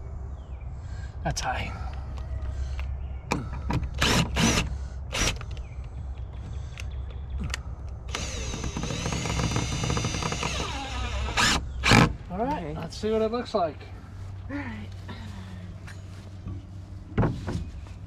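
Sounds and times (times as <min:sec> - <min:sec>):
power drill motor whining: 0:04.0 - 0:05.4, 0:08.1 - 0:12.1.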